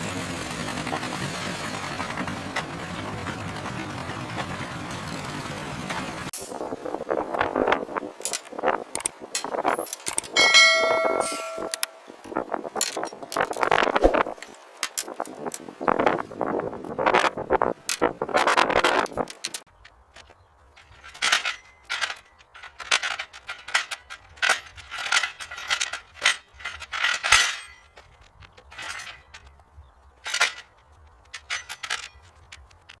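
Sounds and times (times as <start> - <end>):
hard objects clinking and knocking: 8.2 - 12.1.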